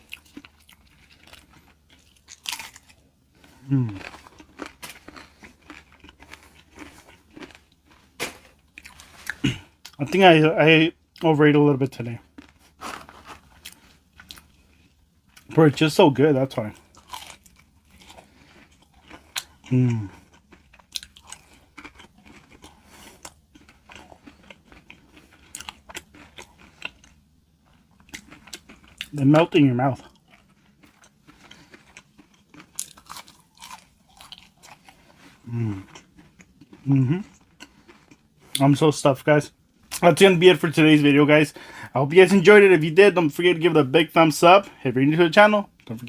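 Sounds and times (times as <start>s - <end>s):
person chewing food: 0.0s - 10.0s, 12.2s - 15.6s, 16.7s - 38.6s.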